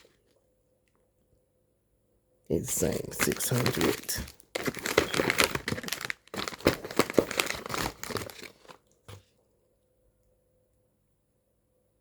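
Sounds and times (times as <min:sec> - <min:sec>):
packaging crinkling and rustling: 0:02.8 - 0:09.2.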